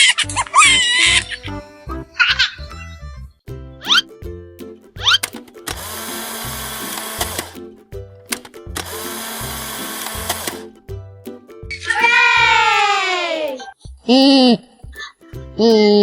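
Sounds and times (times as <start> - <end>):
cartoon music with beat: 0.0 - 16.0
whirring drill-like sound effects: 5.7 - 7.6, 8.8 - 10.6.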